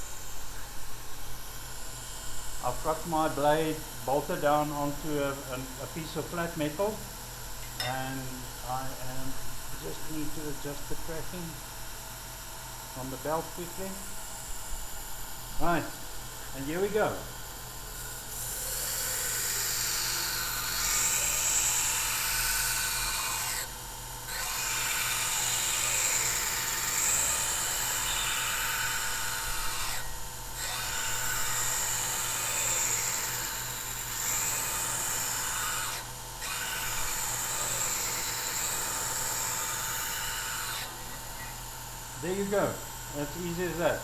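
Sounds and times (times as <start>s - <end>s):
motor humming: 0.0s - 44.0s
belt grinder grinding steel: 1.6s - 11.7s, 16.6s - 44.0s.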